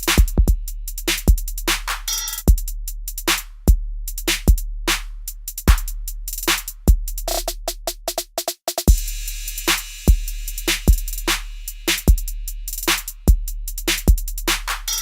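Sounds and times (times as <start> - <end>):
electronic drum machine beat: 0.0 - 0.6.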